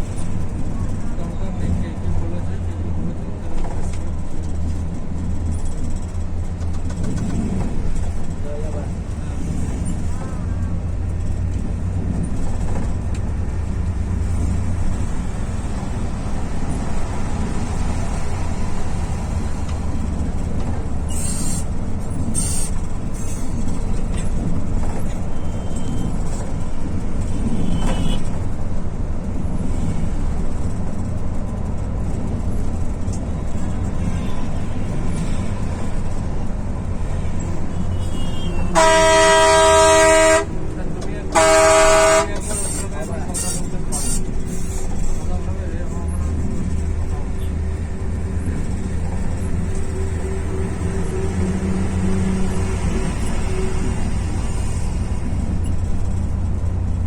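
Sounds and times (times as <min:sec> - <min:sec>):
bus engine running: 0:00.0 - 0:57.0
road noise rumble: 0:00.0 - 0:57.0
multi-tone vehicle horn: 0:37.9 - 0:40.7, 0:41.3 - 0:42.8.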